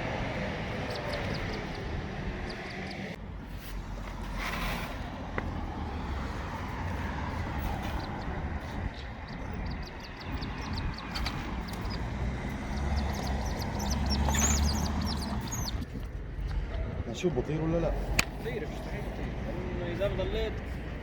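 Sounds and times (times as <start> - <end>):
steady low rumble: 0.0 - 4.2, 5.0 - 18.0
small birds chirping: 0.6 - 3.2, 7.4 - 15.9.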